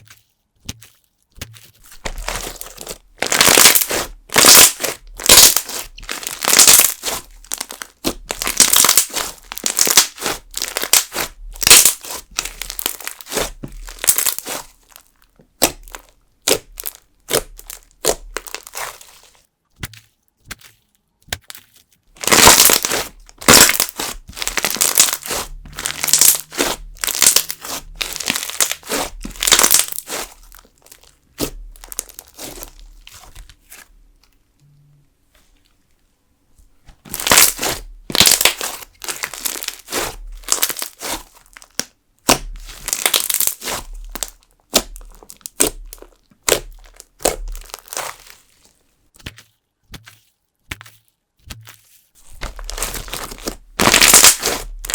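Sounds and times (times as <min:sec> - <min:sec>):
slime squishing and crackling: 0:00.0 - 0:34.4, 0:36.8 - 0:54.9.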